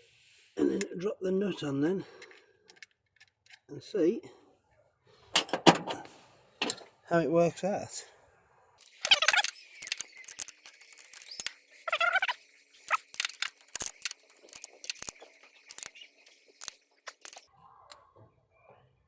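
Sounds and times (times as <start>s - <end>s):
metal clicks: 8.8s - 17.5s
short squeaks: 8.8s - 17.5s.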